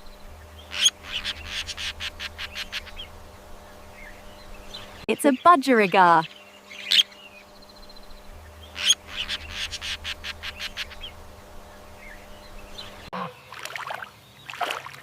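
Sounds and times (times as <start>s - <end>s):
budgerigar chirping: 0.6s - 3.1s, 8.6s - 11.2s.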